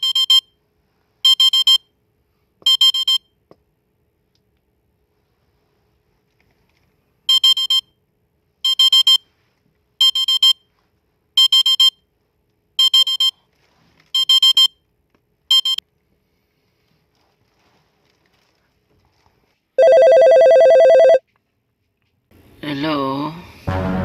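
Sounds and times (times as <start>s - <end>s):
alarm clock beeping: 0.0s - 0.4s, 1.3s - 1.8s, 2.7s - 3.2s, 7.3s - 7.8s, 8.7s - 9.2s, 10.0s - 10.6s, 11.4s - 11.9s, 12.8s - 13.3s, 14.2s - 14.7s, 15.5s - 15.8s, 19.8s - 21.2s.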